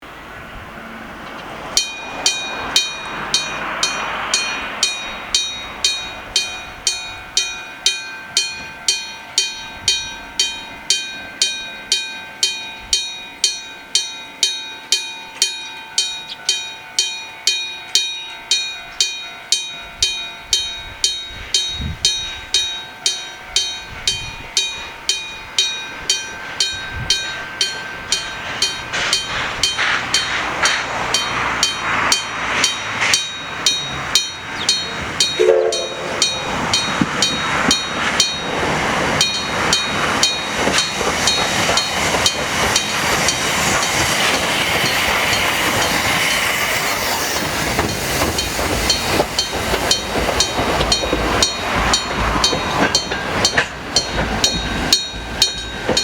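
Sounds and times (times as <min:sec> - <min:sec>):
approaching train rumble: 0:00.0 - 0:56.0
level crossing bell ringing: 0:01.7 - 0:30.3, 0:31.0 - 0:44.0.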